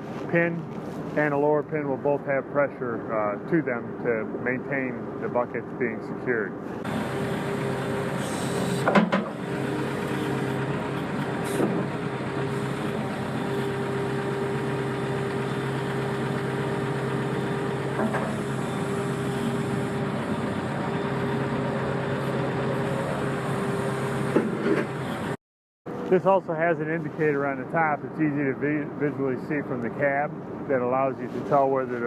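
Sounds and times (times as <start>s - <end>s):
excavator diesel engine: 6.8s - 30.7s.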